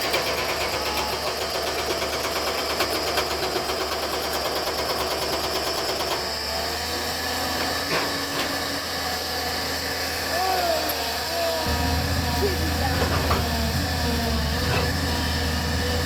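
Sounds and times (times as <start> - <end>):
excavator engine running: 11.6 - 16.0
hydraulic rock breaker hammering: 11.7 - 16.0.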